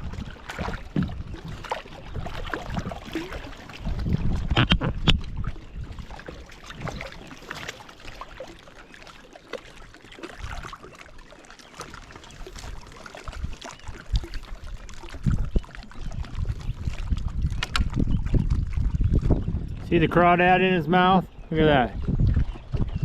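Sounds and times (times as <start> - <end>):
water splashing and trickling: 0.0 - 23.0.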